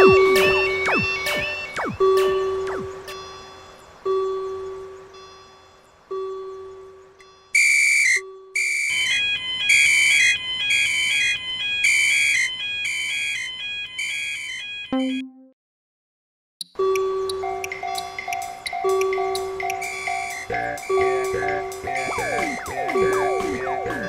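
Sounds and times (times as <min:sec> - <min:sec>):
high electronic tune: 0:00.0 - 0:03.6, 0:14.9 - 0:15.5, 0:16.7 - 0:24.0
railroad crossing alarm ringing: 0:00.0 - 0:15.2, 0:16.8 - 0:24.0.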